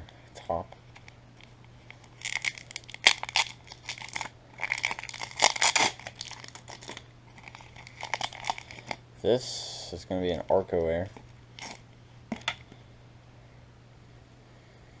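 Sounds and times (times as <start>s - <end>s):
paper packing crinkling: 0.9s - 9.0s.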